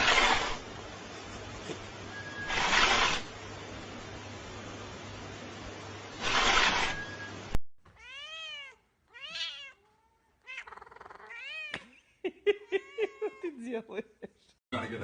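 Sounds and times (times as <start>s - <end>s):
cat meowing: 7.9s - 11.8s.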